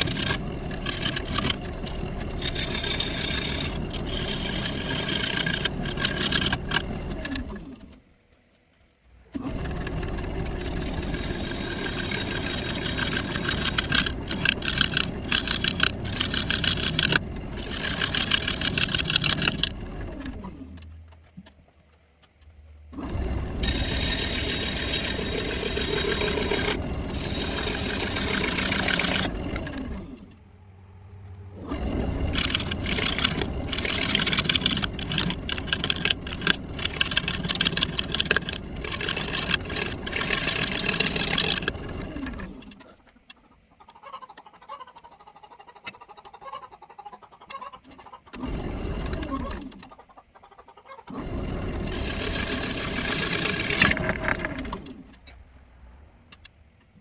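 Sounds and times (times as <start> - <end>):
gouge cutting wood on lathe: 0.0 - 8.0, 9.3 - 20.8, 23.0 - 30.3, 31.7 - 42.6, 51.1 - 55.0
lathe humming: 0.0 - 8.0, 9.3 - 20.9, 22.9 - 30.4, 31.6 - 42.7, 51.2 - 55.1.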